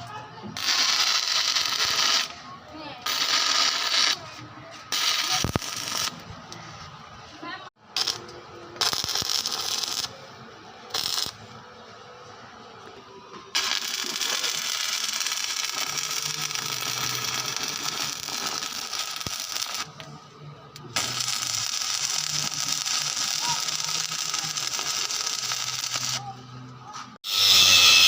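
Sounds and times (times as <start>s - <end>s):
welding arc crackling: 0.6s - 2.4s, 3.0s - 4.2s, 4.9s - 6.3s, 7.9s - 10.2s, 10.9s - 11.4s, 13.5s - 20.1s, 20.7s - 26.4s.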